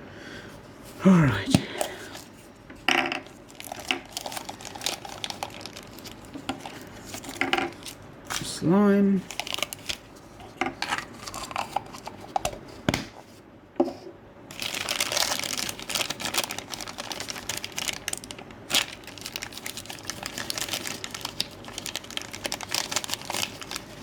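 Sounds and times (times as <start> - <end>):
plastic packaging crinkling: 3.2 - 8.5, 9.2 - 10.2, 14.5 - 24.0.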